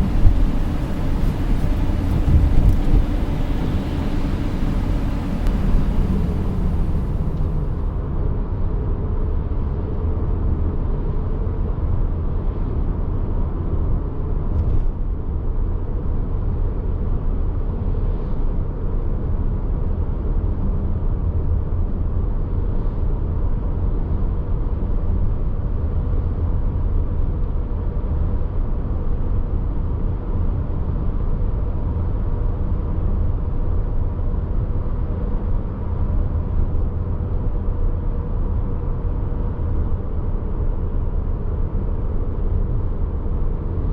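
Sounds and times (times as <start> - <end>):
faint steady tone: 0.0 - 8.0
car road and drivetrain rumble: 0.0 - 8.2.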